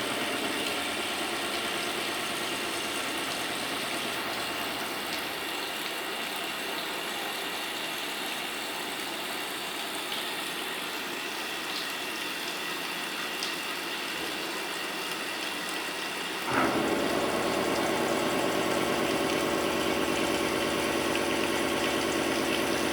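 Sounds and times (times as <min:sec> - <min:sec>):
machine hum with whine: 0:00.0 - 0:05.2, 0:16.5 - 0:22.9.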